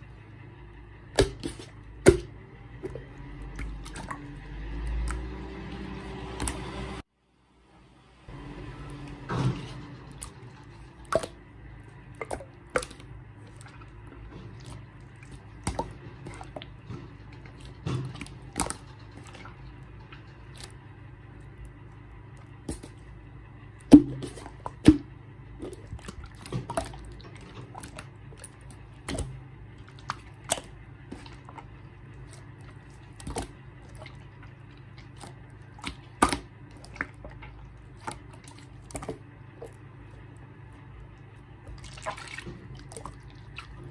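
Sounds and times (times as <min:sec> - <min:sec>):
low hum: 0:00.0 - 0:43.9
slime squished by hand: 0:21.6 - 0:23.1, 0:23.8 - 0:40.2.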